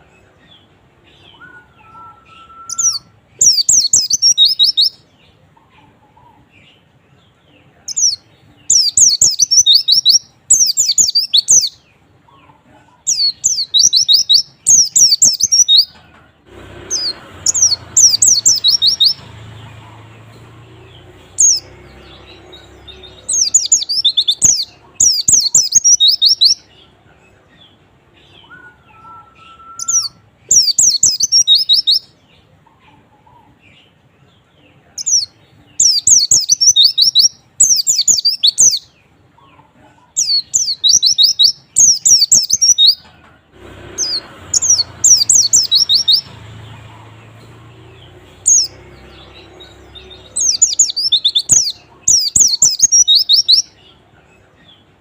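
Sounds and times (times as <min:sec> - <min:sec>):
bird twittering: 0:00.6 - 0:05.1, 0:07.9 - 0:11.8, 0:13.0 - 0:16.0, 0:16.9 - 0:26.7, 0:28.3 - 0:32.2, 0:35.0 - 0:38.9, 0:40.2 - 0:43.0, 0:44.0 - 0:54.0.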